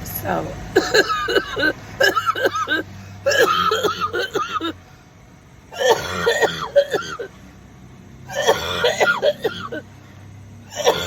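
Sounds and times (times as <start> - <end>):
woman coughing: 0.7 - 4.8, 5.8 - 7.3, 8.3 - 9.8, 10.8 - 11.0.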